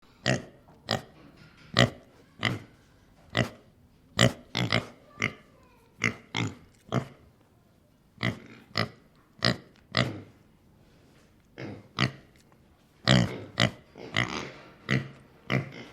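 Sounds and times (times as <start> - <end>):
pig grunting: 13.0 - 15.9.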